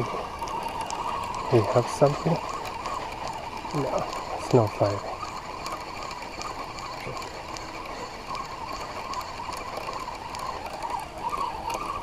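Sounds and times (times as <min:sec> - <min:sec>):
faint irregular ticks: 0:00.0 - 0:12.0
fishing reel cranking: 0:00.0 - 0:12.0.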